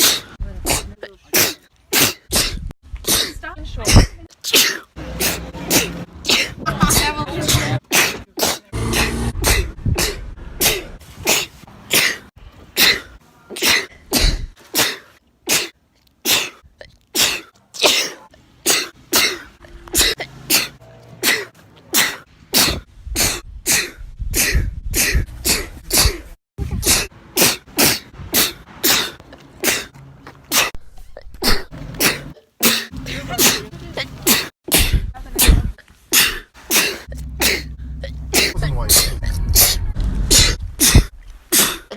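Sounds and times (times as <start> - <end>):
person sneezing: 0.0 - 6.6, 7.9 - 12.2, 12.8 - 15.7, 17.2 - 29.9, 31.4 - 39.7, 40.3 - 41.9.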